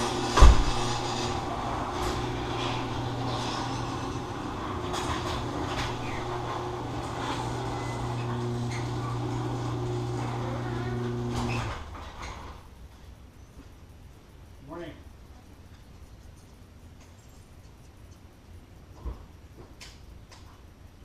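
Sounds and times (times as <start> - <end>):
knocks and clatter: 0.0 - 9.0
motor humming: 0.0 - 11.9.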